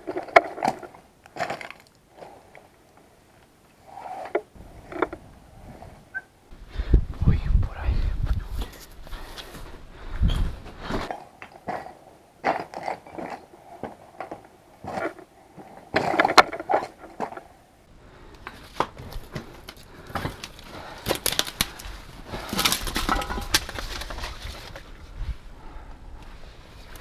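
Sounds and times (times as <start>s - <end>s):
wind buffeting microphone: 4.6s - 10.8s.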